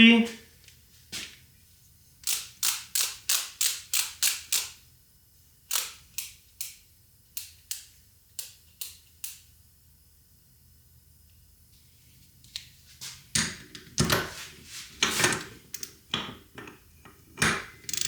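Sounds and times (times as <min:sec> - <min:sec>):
torque wrench ratchet clicking: 0:02.2 - 0:04.8, 0:05.7 - 0:06.8, 0:17.4 - 0:18.0.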